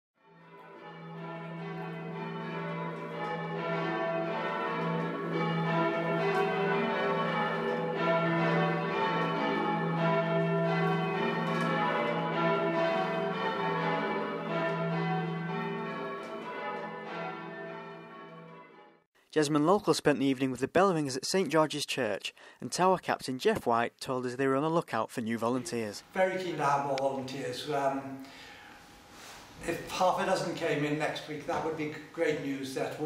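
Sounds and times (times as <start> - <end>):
church bells pealing: 0.2 - 19.1, 26.2 - 28.7, 29.6 - 33.0.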